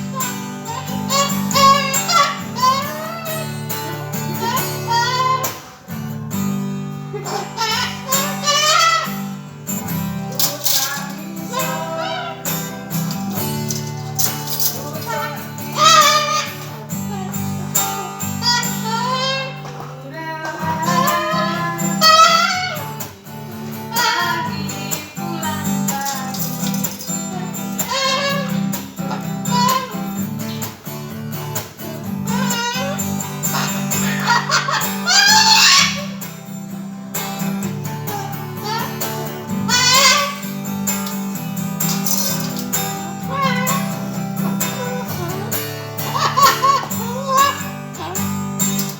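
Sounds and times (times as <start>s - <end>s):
cockatoo calling: 0.0s - 5.8s, 7.1s - 19.8s, 20.6s - 30.7s, 31.8s - 48.9s
strummed guitar chords: 0.0s - 48.9s.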